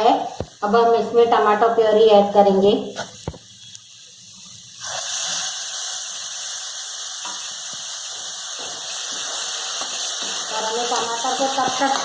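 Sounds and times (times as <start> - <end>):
puree sizzling in hot oil: 0.2 - 12.0.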